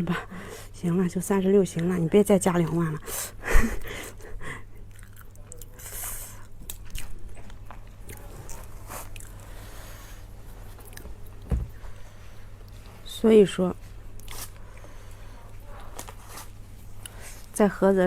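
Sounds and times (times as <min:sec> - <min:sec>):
food being bitten and chewed: 0:04.8 - 0:09.6, 0:14.1 - 0:14.8
soft thump: 0:11.4 - 0:11.8.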